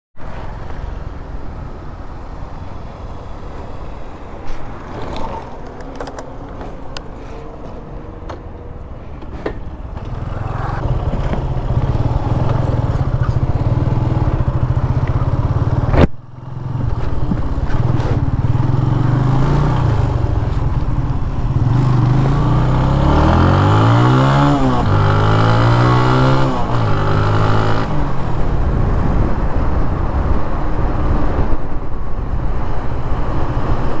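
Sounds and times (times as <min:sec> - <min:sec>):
motorcycle engine revving: 0:09.3 - 0:30.3
motorcycle engine running: 0:09.8 - 0:31.2.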